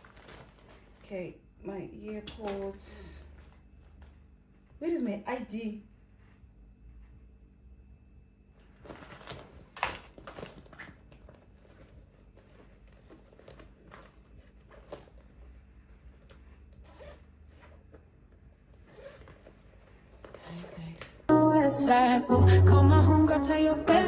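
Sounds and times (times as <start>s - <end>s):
rustles and clicks of rummaging: 0.0s - 1.3s, 8.6s - 21.3s.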